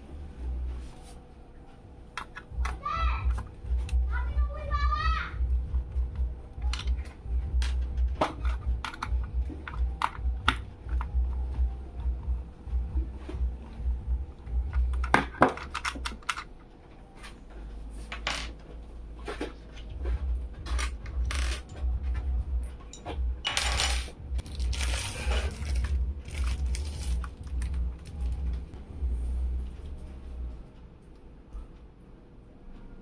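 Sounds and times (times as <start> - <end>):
low pulsing rumble: 2.5 - 15.2, 19.8 - 32.5
packaging rustling: 24.4 - 28.4.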